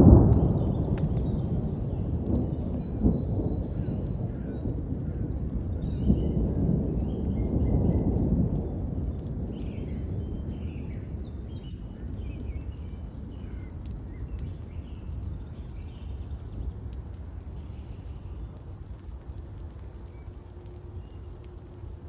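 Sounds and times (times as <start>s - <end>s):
birds chirping: 0.0s - 22.0s
thunder rumbling: 0.0s - 22.0s.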